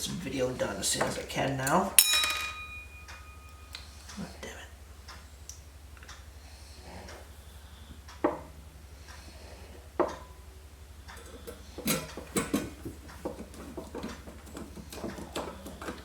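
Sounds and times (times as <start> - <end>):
steady low hum: 0.0 - 16.0
metal knocks and rattles: 11.1 - 16.0.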